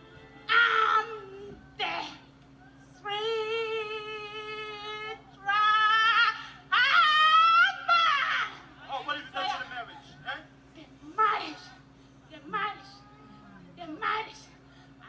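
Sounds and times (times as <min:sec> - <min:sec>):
woman wailing: 0:04.1 - 0:08.7.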